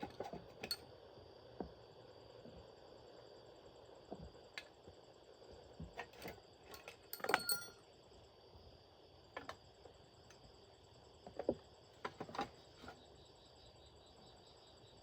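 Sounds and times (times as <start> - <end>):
metal tools tapping and clinking: 0.0 - 0.8, 6.7 - 7.8
ringing metallic clatter: 7.1 - 7.8.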